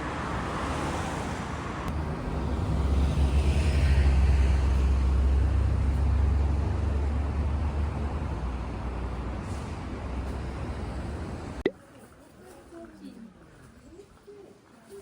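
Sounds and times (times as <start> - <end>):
passing vehicle rumble: 0.0 - 11.6.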